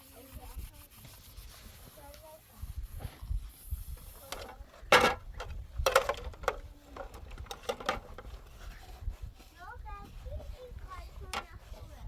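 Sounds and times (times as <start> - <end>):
knocks and clatters: 4.3 - 8.6.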